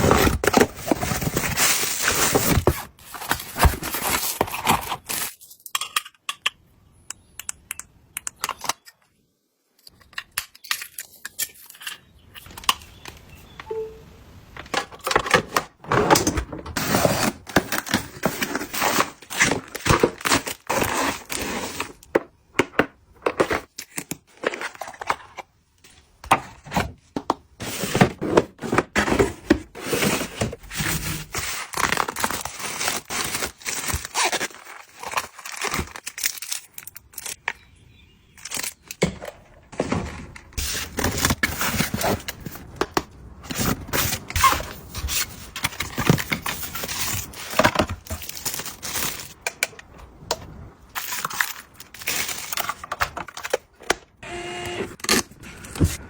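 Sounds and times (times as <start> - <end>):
packaging crinkling and tearing: 0.0 - 5.4, 16.2 - 22.0, 29.2 - 37.4, 38.4 - 39.0, 40.6 - 49.4, 50.9 - 53.9.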